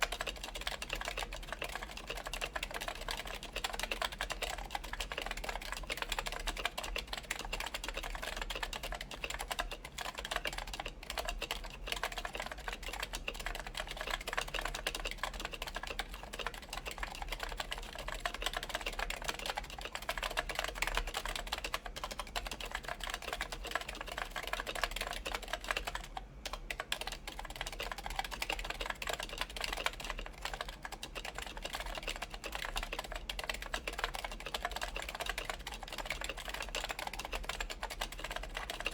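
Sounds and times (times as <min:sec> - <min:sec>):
keyboard typing: 0:18.2 - 0:38.9.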